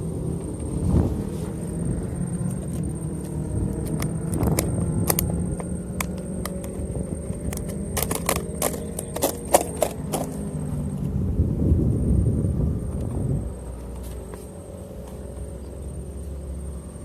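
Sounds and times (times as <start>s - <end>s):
mechanical hum: 0.0s - 17.0s
sharp clicks and rattles: 2.4s - 10.7s.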